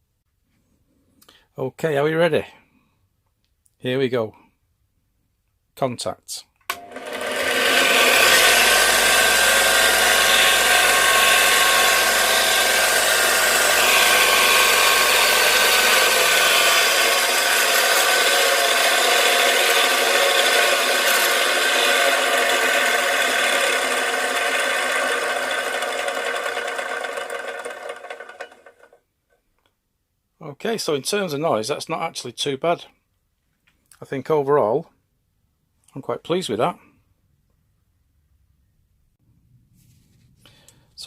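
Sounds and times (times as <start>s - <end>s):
grinder motor whining: 6.7s - 29.0s.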